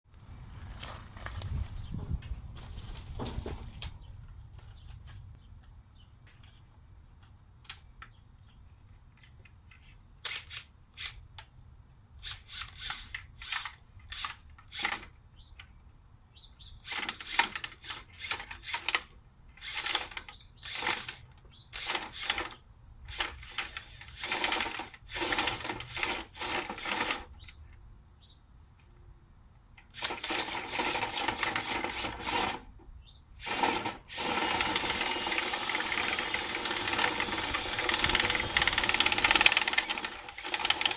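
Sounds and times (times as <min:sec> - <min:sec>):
power drill running: 0:12.2 - 0:14.9, 0:19.6 - 0:27.2, 0:30.0 - 0:32.6, 0:33.4 - 0:40.9.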